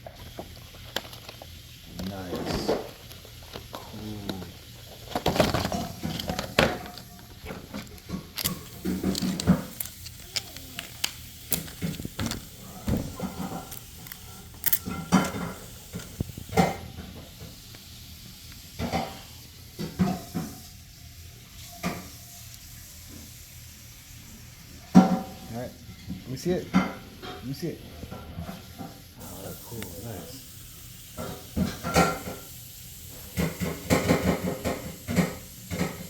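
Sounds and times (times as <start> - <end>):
packaging crinkling and rustling: 0.0 - 16.8.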